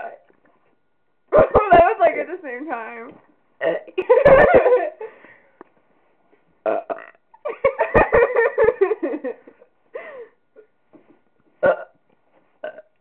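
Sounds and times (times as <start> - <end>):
person belching: 3.6 - 4.0, 6.6 - 7.2, 11.6 - 12.0, 12.6 - 13.0.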